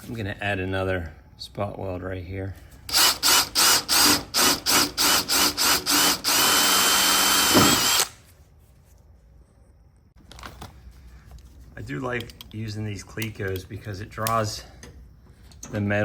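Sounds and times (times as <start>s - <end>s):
electric drill boring into steel: 2.9s - 8.2s.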